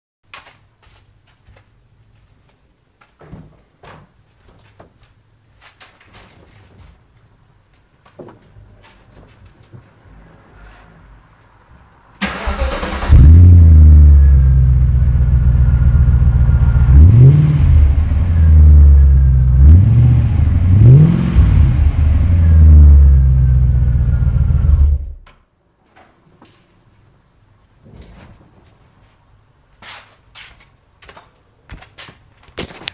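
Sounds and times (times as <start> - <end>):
car engine starting and idling: 12.1 - 25.3
engine revving: 12.2 - 25.3.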